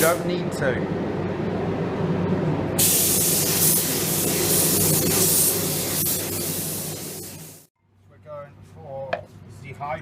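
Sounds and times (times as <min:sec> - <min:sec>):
spray gun hissing: 0:02.8 - 0:07.7.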